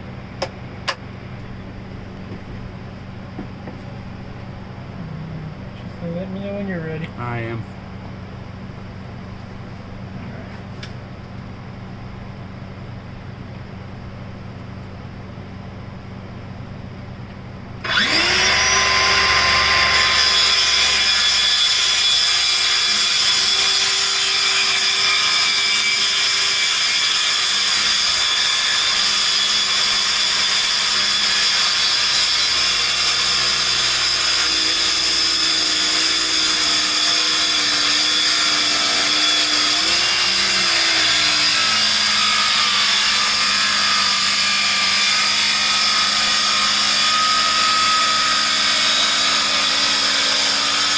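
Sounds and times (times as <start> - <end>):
power saw cutting wood: 17.8 - 50.9.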